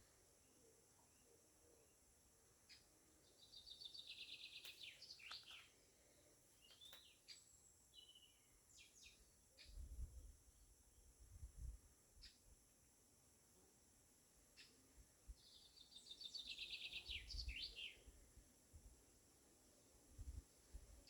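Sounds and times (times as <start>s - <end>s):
songbird trills and chirps: 0.4s - 10.1s, 14.5s - 18.2s.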